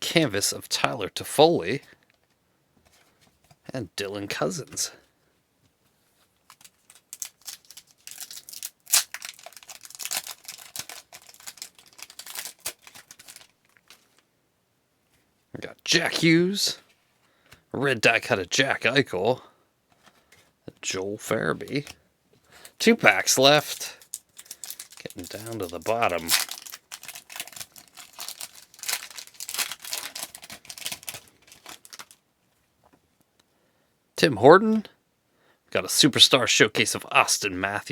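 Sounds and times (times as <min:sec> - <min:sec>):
plastic wrapper tearing and crinkling: 0:06.4 - 0:14.2, 0:22.7 - 0:32.2.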